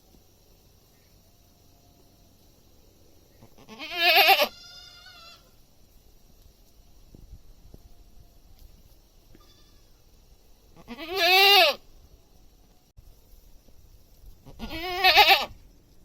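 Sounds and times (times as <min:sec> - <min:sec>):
goat bleating: 0:03.6 - 0:05.5, 0:09.4 - 0:09.9, 0:10.8 - 0:11.8, 0:14.5 - 0:15.5.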